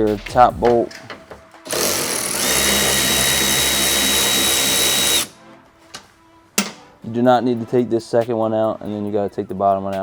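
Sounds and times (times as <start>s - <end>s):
power driver motor whine: 1.7s - 5.3s.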